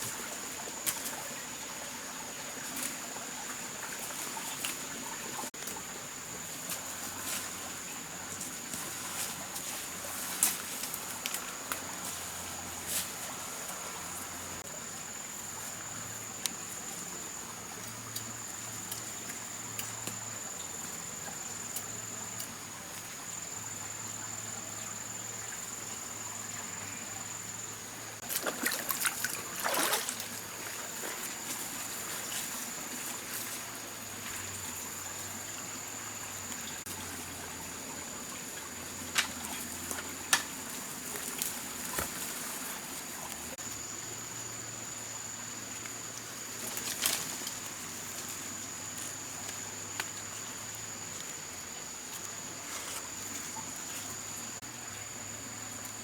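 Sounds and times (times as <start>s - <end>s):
scrapes or splashes: 28.2s - 33.7s
water trickling: 28.2s - 43.6s.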